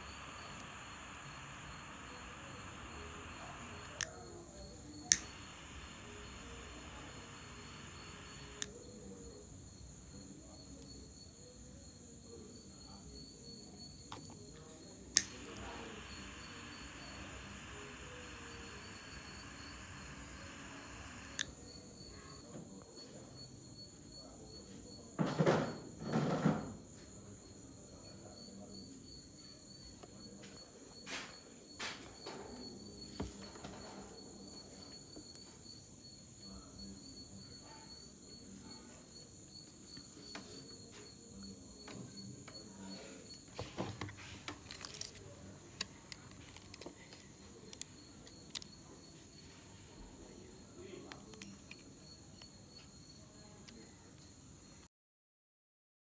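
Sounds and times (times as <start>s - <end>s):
sharp clicks: 0.0s - 4.2s, 4.8s - 8.7s, 15.1s - 21.6s
crickets chirping: 0.0s - 54.9s.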